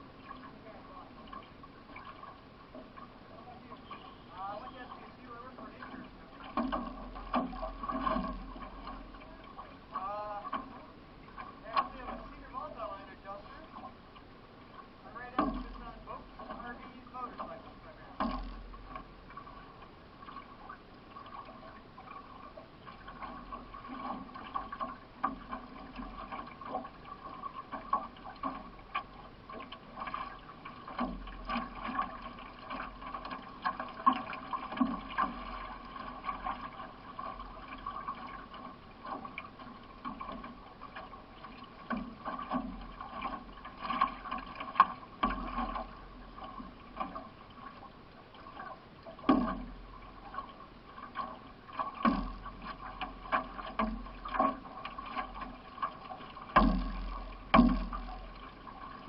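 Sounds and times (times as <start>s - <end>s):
paddle splashing water: 0.0s - 59.0s.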